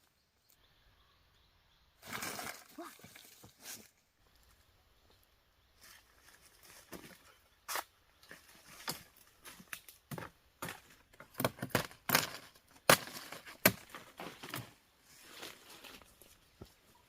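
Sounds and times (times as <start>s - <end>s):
sharp knocks and cracks: 9.7s - 14.7s.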